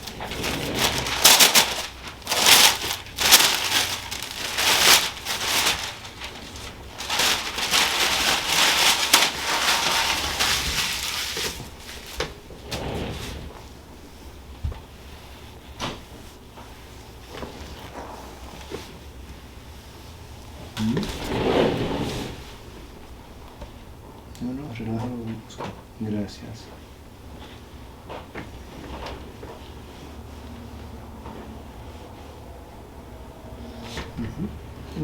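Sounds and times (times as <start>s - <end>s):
hands rubbing and clothing rustling: 0.0s - 25.8s.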